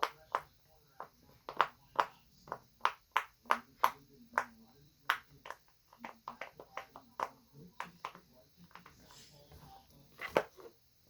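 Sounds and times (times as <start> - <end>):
fidget toy bubbles popping: 0.0 - 8.8.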